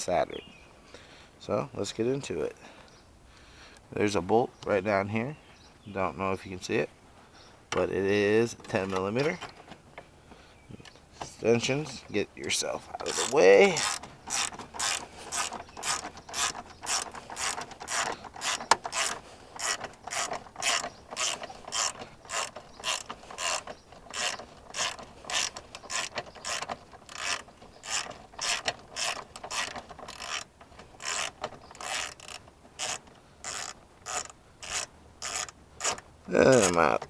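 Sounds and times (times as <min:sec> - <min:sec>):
socket ratchet clicking: 0:12.9 - 0:36.8.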